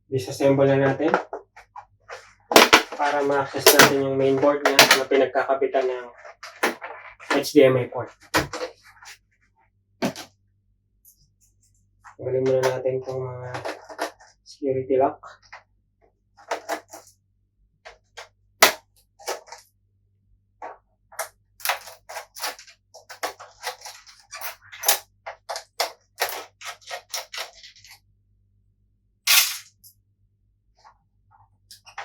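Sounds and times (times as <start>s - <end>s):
hand tools on plastic casing: 16.4s - 17.1s, 21.2s - 28.0s.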